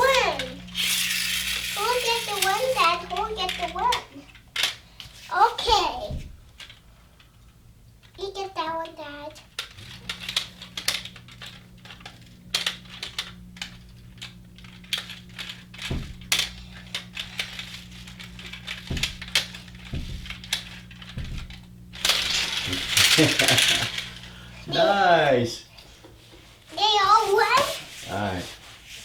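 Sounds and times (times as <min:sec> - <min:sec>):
toy cars clattering on hard surface: 0:00.0 - 0:05.8, 0:22.0 - 0:24.2
steady low hum: 0:00.0 - 0:29.0.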